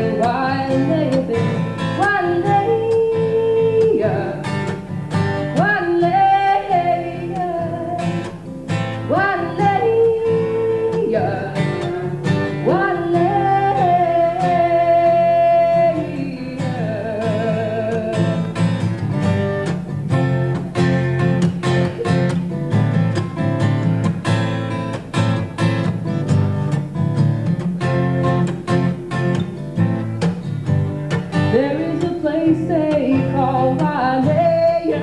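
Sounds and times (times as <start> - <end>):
woman singing: 0.0 - 8.4, 9.0 - 18.6, 31.3 - 35.0
strummed acoustic guitar: 0.0 - 35.0.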